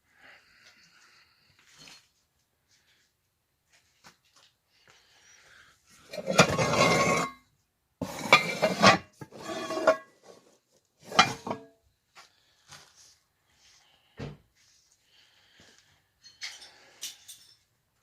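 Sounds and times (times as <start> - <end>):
hard objects clattering and clinking: 6.1 - 7.4, 8.0 - 10.3, 11.0 - 11.7.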